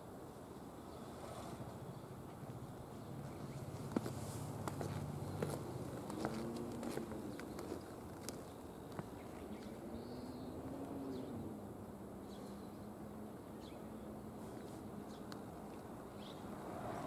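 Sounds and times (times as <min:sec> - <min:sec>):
birds chirping: 0:04.7 - 0:11.6.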